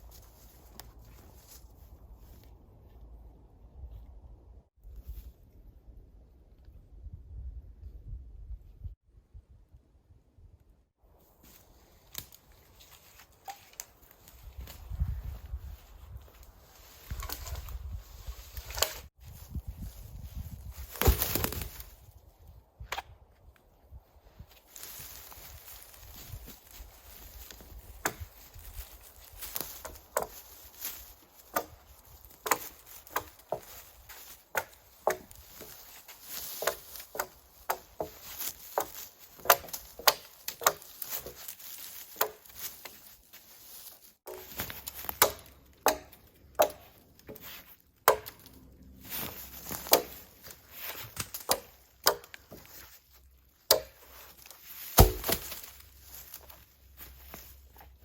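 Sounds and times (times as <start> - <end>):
wood chopping blows: 36.4 - 41.4, 44.3 - 48.6, 54.8 - 55.8.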